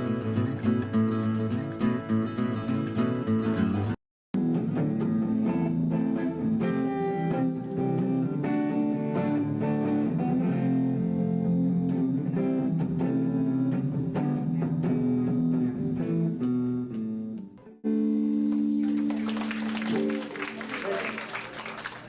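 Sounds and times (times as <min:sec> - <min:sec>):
guitar plucked notes and chords: 0:00.0 - 0:20.5.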